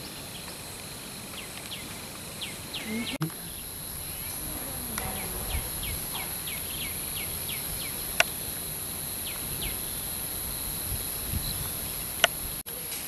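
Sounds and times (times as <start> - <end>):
high-pitched insect drone: 2.8 - 12.6.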